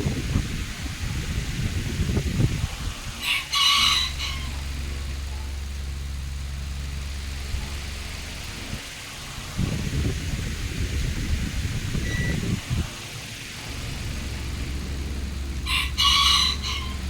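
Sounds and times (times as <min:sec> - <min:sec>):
low mechanical hum: 0:00.0 - 0:17.0
rooster crowing: 0:03.2 - 0:04.7, 0:15.6 - 0:17.0.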